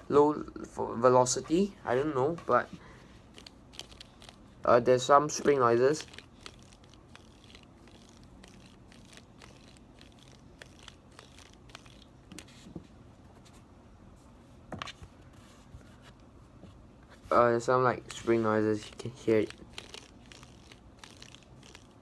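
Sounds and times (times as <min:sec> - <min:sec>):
cube layers clacking: 0:19.2 - 0:21.9.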